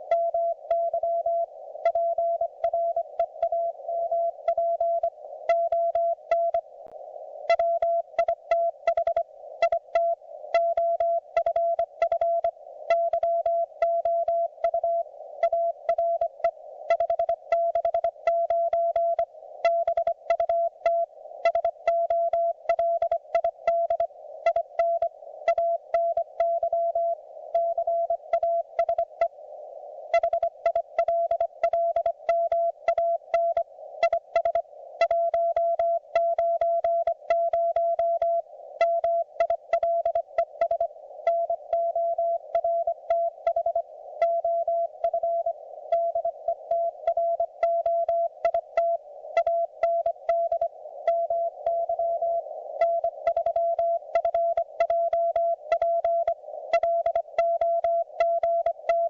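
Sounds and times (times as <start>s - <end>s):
morse code tone: 30.2s - 59.0s.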